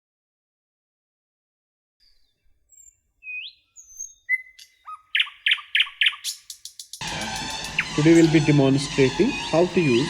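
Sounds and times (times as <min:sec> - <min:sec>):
birds chirping: 0:02.0 - 0:10.0.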